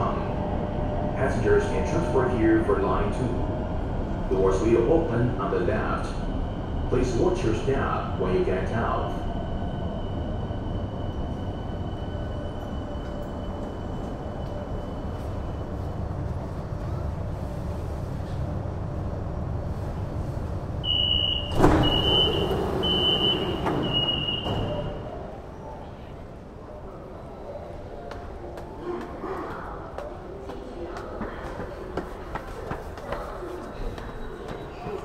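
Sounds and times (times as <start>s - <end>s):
metro train rumbling: 0.0s - 35.0s
door warning beeps: 20.9s - 25.0s
train doors thumping: 21.0s - 25.2s.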